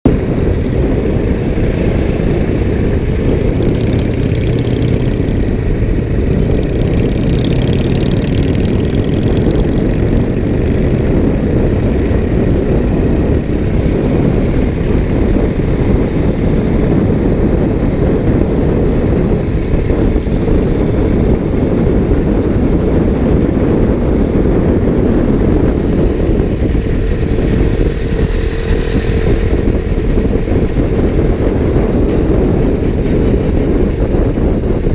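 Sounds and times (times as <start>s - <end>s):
motorcycle engine rumble: 0.0s - 34.9s
wind on microphone: 0.0s - 34.9s.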